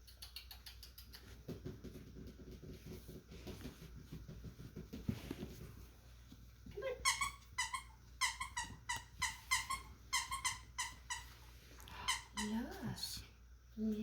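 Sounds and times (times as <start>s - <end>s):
squeaky dog toy squeaking: 7.0s - 11.3s.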